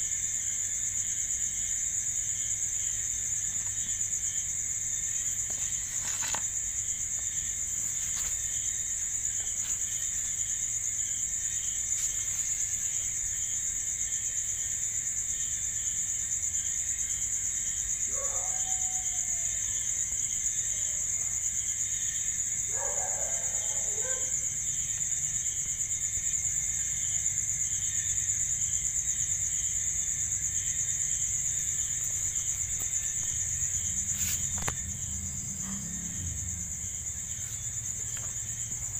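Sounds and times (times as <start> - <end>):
insects chirring: 0.0 - 38.9
low pulsing insect layer: 0.0 - 38.9.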